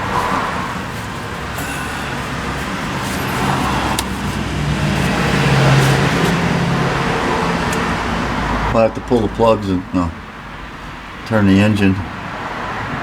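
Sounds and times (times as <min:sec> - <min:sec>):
vehicle engine humming: 0:00.0 - 0:08.8.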